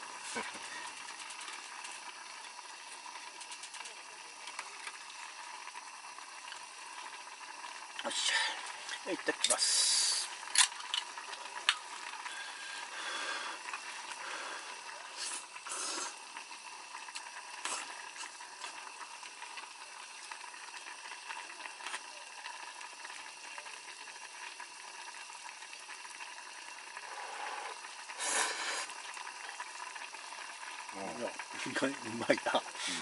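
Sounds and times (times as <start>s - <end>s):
pot simmering and bubbling: 0.0s - 33.0s
eating or utensil noises: 10.4s - 11.9s.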